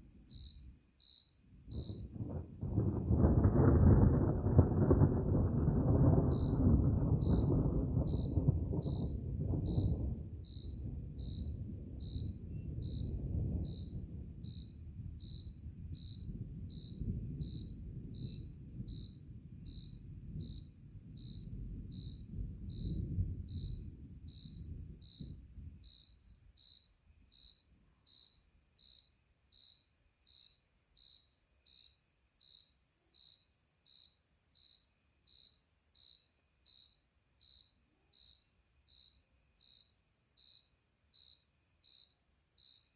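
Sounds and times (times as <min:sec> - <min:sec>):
cricket chirping: 0:00.1 - 0:42.9
distant thunder rumbling: 0:01.6 - 0:27.5.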